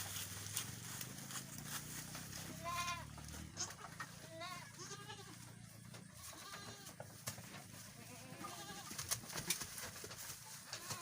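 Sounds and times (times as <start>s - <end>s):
goats bleating: 2.3s - 7.1s, 7.8s - 9.2s, 10.7s - 11.0s.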